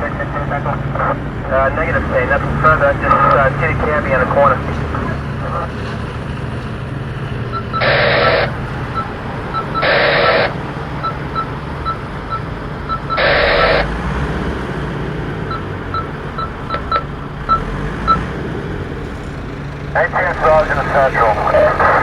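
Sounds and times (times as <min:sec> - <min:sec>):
radio static bursts: 0:00.0 - 0:05.8, 0:07.6 - 0:11.2, 0:13.0 - 0:14.0, 0:20.0 - 0:22.0
vehicle engine hum: 0:00.0 - 0:22.0.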